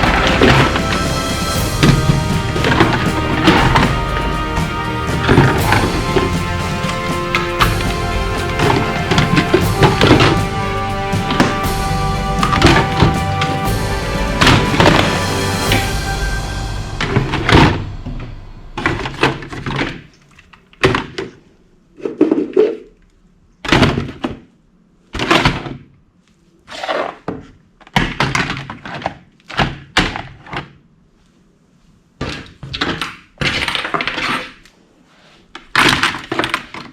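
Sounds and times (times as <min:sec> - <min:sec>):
plastic toys knocking and clattering: 0:23.6 - 0:24.5, 0:25.2 - 0:25.9, 0:27.2 - 0:30.8, 0:32.2 - 0:34.6, 0:35.6 - 0:36.9.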